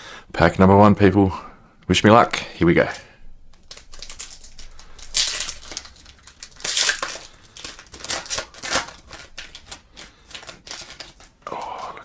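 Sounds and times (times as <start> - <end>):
plastic wrapper tearing and crinkling: 3.4 - 11.7.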